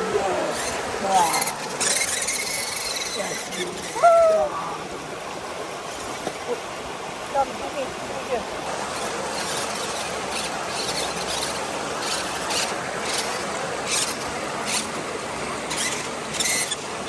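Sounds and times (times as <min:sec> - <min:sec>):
high-pitched squeaks or splashes: 0:00.5 - 0:04.5, 0:09.0 - 0:14.9, 0:15.7 - 0:16.9.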